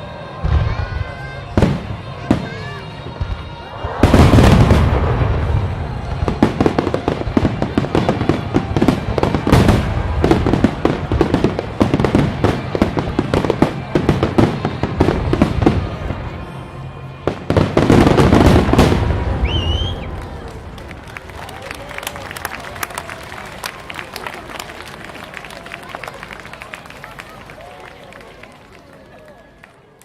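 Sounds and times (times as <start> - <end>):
fireworks booms: 0.4 - 16.4, 17.3 - 21.1
fireworks cracking: 0.5 - 16.1, 17.3 - 26.8.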